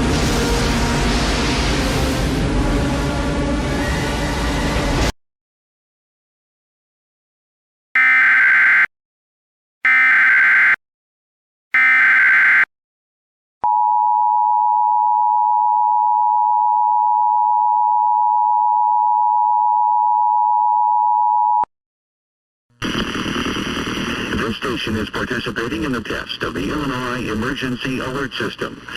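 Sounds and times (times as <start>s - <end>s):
harsh data bursts: 11.8s - 12.7s
two-tone attention signal: 11.8s - 12.7s.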